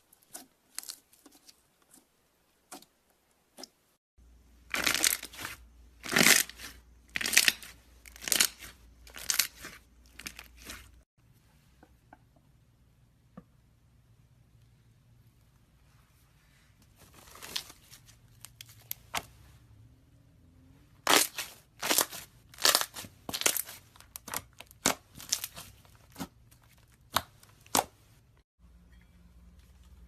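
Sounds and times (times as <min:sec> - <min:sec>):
slime popping and crackling: 0:21.1 - 0:26.2.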